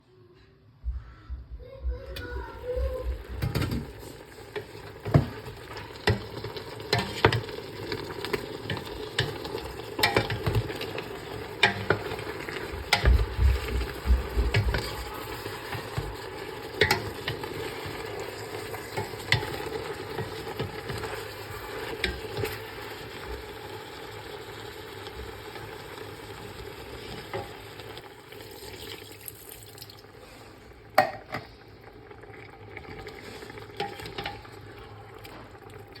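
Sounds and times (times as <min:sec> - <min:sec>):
chicken frying hiss: 0:02.2 - 0:31.8, 0:33.2 - 0:34.7.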